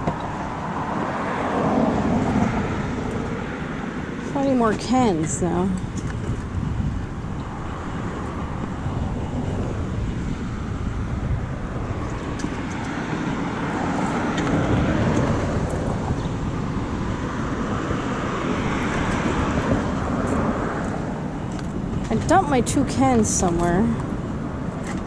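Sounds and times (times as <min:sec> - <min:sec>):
road traffic noise: 0:00.0 - 0:25.0
vehicle passing: 0:00.3 - 0:25.0.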